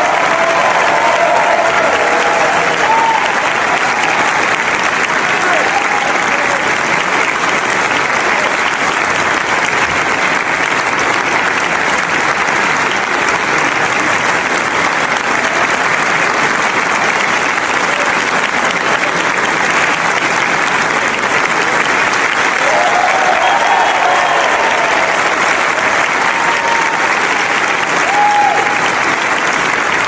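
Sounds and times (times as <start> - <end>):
crowd clapping and cheering: 0.0 - 30.0.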